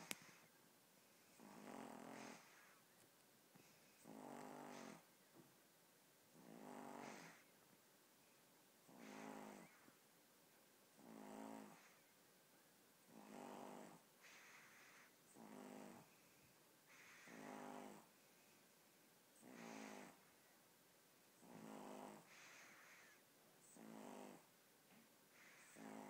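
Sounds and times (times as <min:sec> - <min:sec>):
puppy snoring: 0:00.0 - 0:00.5, 0:01.3 - 0:02.8, 0:04.0 - 0:05.1, 0:06.3 - 0:07.6, 0:08.8 - 0:09.9, 0:11.0 - 0:12.1, 0:13.1 - 0:18.1, 0:19.4 - 0:20.3, 0:21.4 - 0:24.5, 0:25.3 - 0:26.0.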